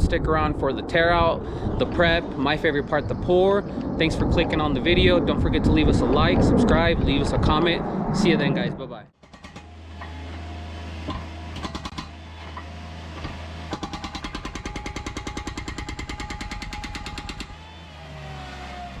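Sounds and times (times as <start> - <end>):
demolition hammer breaking concrete: 13.7 - 17.6.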